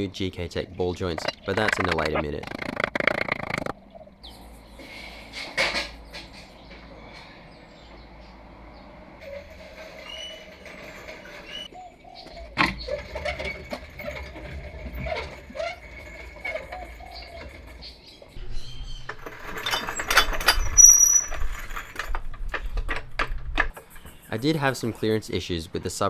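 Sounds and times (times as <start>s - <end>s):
birds chirping: 0.0s - 20.0s, 23.7s - 26.0s
tools and parts clattering: 1.0s - 3.7s, 9.0s - 25.3s.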